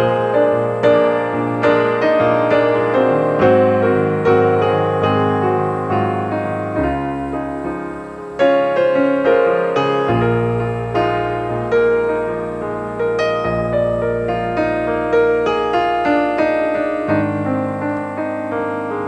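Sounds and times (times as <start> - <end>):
slow piano music: 0.0 - 19.0.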